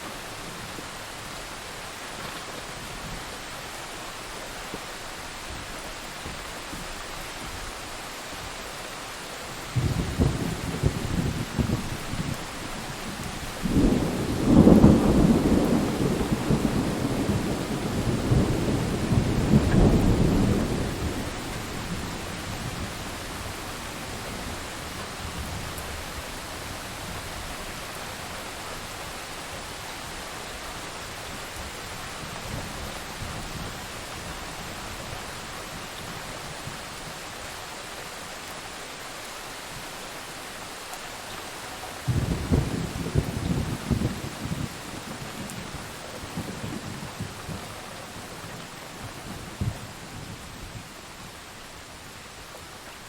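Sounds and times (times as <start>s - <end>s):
heavy rain: 0.0s - 53.0s
thunder rolling: 9.7s - 12.4s, 13.0s - 26.2s, 42.0s - 50.4s.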